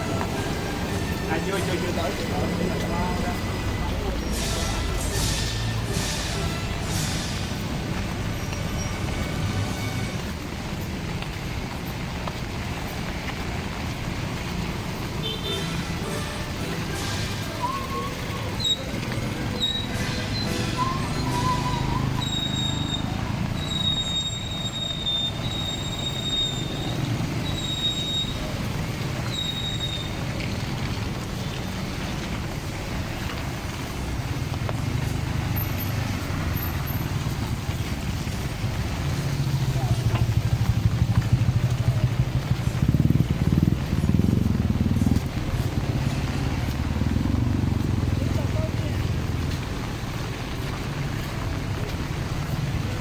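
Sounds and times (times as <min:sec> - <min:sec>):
crowd rumble: 0:00.0 - 0:53.0
rain: 0:00.0 - 0:53.0
wind: 0:00.0 - 0:53.0
piercing whistle blasts: 0:17.3 - 0:28.5
vehicle engine revving: 0:30.5 - 0:53.0.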